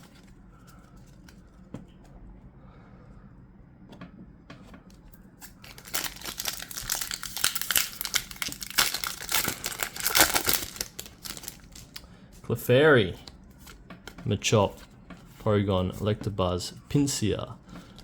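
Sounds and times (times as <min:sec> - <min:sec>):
foil wrapper crinkling and tearing: 0:05.4 - 0:12.0.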